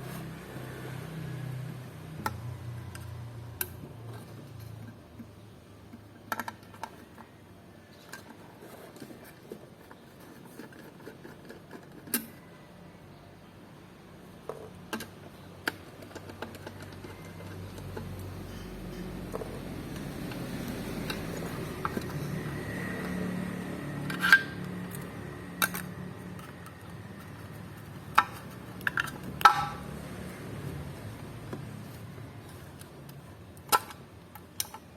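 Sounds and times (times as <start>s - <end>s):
hard objects knocking and clinking: 24.0s - 30.0s.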